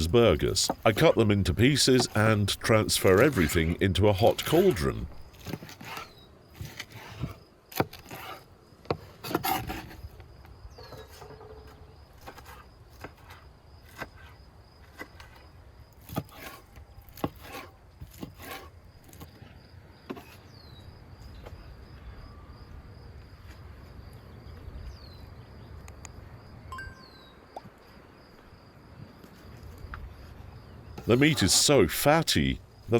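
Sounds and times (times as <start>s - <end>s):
knife cutting on wooden board: 17.2s - 18.7s.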